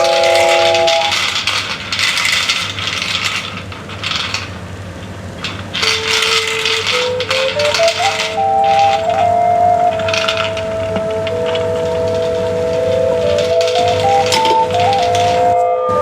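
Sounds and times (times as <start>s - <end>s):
noisy rattling texture: 0.0s - 16.0s
sustained recorder notes: 8.2s - 16.0s.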